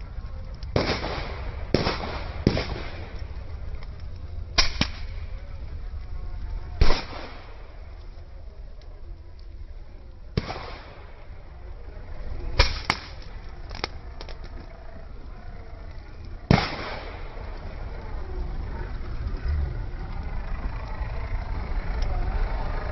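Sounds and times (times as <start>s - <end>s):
firecracker bangs: 0.7s - 3.1s, 4.6s - 5.1s, 6.8s - 7.6s, 10.4s - 11.0s, 16.5s - 17.3s.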